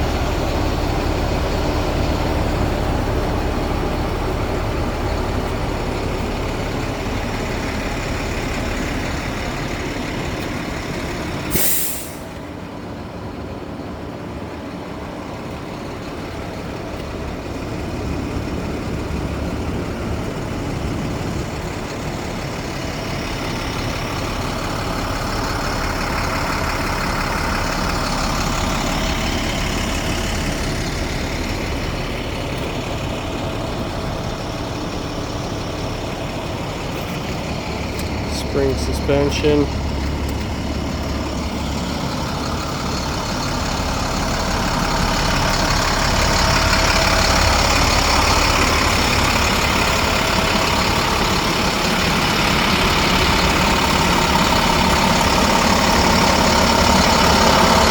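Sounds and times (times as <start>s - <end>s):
diesel truck running: 0.0s - 57.9s
air release hiss: 11.5s - 12.3s.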